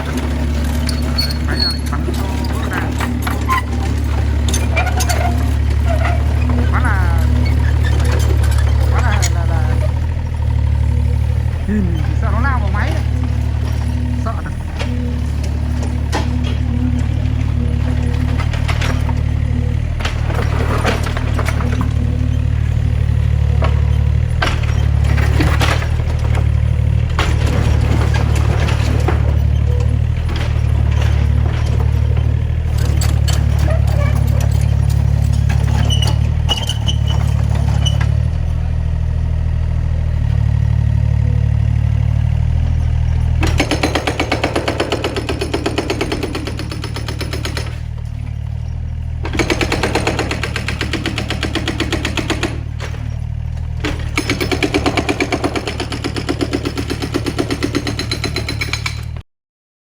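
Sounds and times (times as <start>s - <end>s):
excavator engine drone: 0.0s - 59.2s
rapid even hammering: 40.2s - 48.5s, 49.2s - 59.2s.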